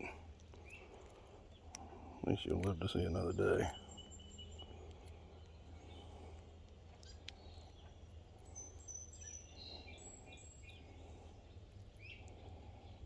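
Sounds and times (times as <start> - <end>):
bird chirps: 2.9 - 6.4, 7.0 - 13.0.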